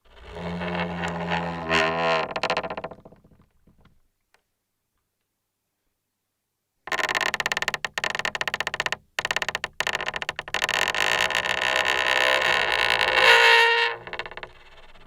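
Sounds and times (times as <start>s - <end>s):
stick-slip creaking: 0.2s - 3.4s, 6.9s - 15.0s.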